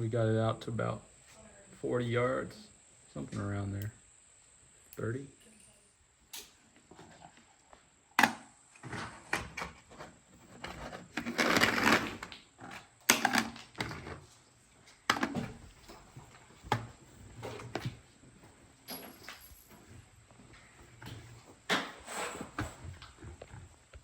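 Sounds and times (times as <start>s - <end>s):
scraping rustle: 8.8s - 12.8s.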